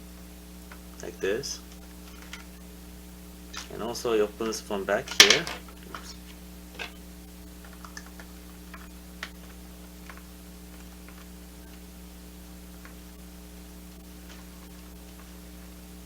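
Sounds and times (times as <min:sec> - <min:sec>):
low electrical hum: 0:00.0 - 0:16.0
plastic bricks clicking and tapping: 0:05.1 - 0:06.2.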